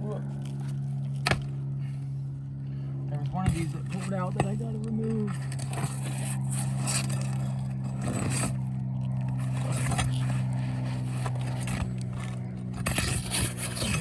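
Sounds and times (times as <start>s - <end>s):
machine humming: 0.0s - 14.0s
roof shingles scraping and clicking: 3.2s - 14.0s.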